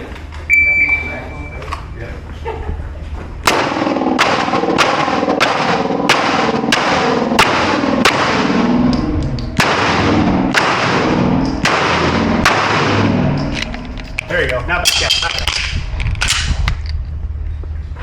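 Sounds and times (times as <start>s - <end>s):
steady loud background sound: 0.0s - 18.0s
handgun shots: 3.5s - 8.6s.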